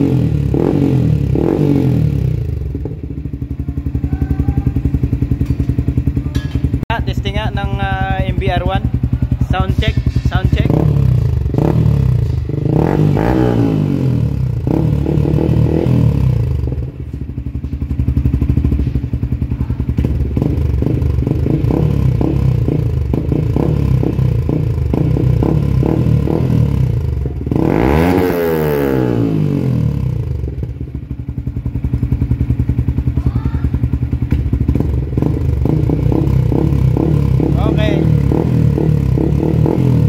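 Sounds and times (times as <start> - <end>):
engine revving: 0.0 - 2.6, 9.5 - 16.8, 20.0 - 30.7, 34.6 - 40.0
motorcycle engine idling: 0.0 - 40.0.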